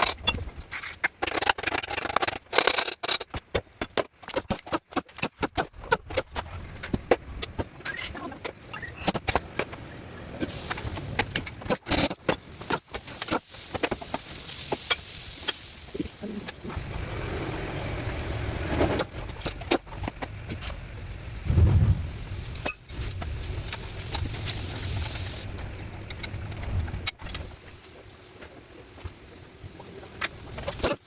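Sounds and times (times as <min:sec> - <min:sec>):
low steady rumble: 0:19.1 - 0:27.4
loud thump: 0:21.5 - 0:22.3.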